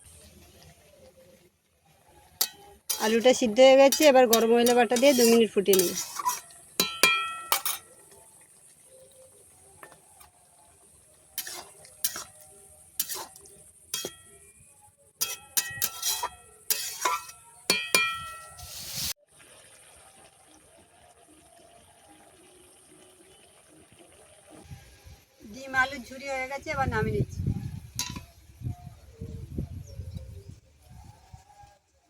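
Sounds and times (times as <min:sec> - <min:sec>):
metal spoon scraping a pot: 0:02.3 - 0:08.3, 0:11.3 - 0:19.1.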